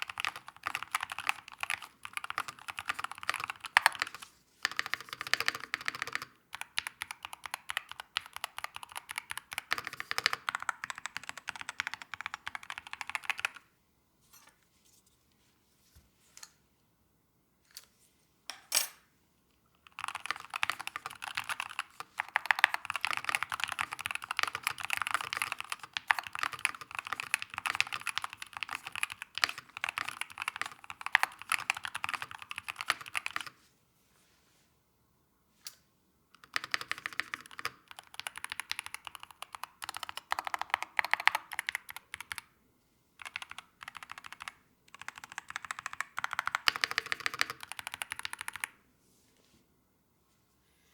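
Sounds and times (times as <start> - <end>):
fast keyboard typing: 0.0 - 13.7, 19.9 - 33.6, 36.4 - 42.5, 43.2 - 48.8.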